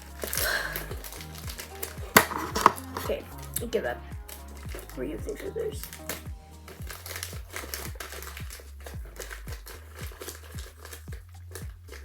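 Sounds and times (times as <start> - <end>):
plastic packaging crinkling: 0.0 - 3.6, 4.2 - 12.0
music with bass drum beat: 0.0 - 12.0.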